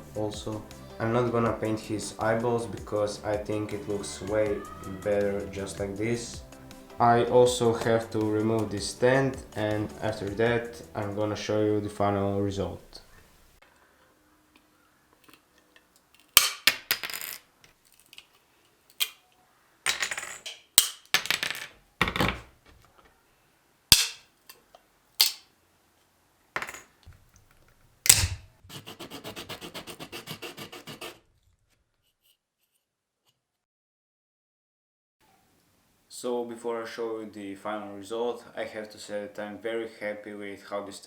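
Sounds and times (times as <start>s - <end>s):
rapid scraping strokes: 28.7s - 31.2s.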